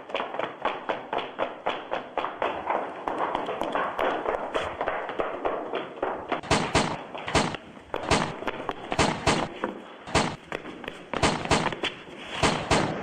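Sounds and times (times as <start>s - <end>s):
loud sharp knocks: 6.4s - 10.6s, 11.2s - 13.0s.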